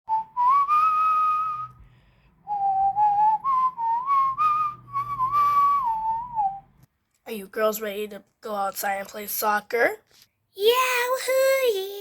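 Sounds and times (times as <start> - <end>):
person whistling a tune: 0.1 - 1.8, 2.4 - 6.7.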